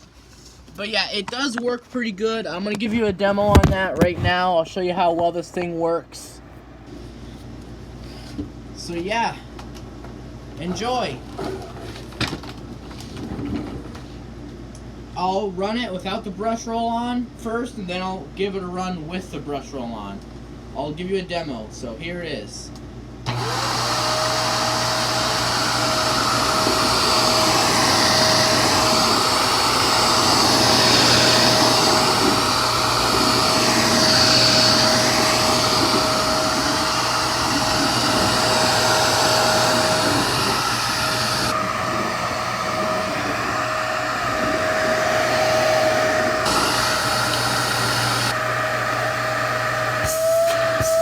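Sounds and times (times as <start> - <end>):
vacuum cleaner motor whine: 23.3 - 51.0.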